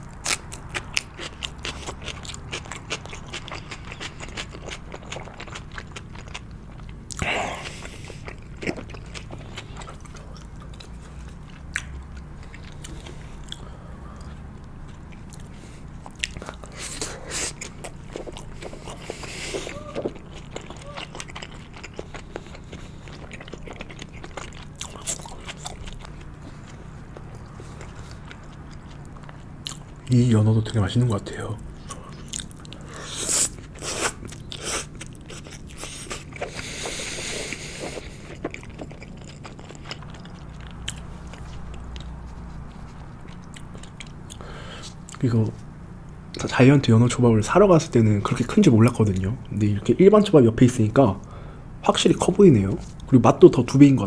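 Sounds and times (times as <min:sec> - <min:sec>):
person chewing: 0:00.0 - 0:30.1, 0:31.4 - 0:46.5
low steady hum: 0:00.0 - 0:54.0.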